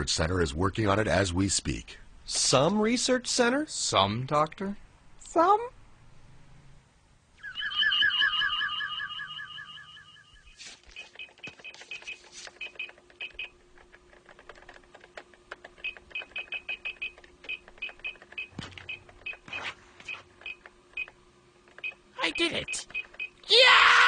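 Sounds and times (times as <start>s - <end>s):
low electronic hum: 0.0s - 23.5s
electronic console beeps: 7.4s - 13.5s
keyboard clicking: 11.0s - 19.4s.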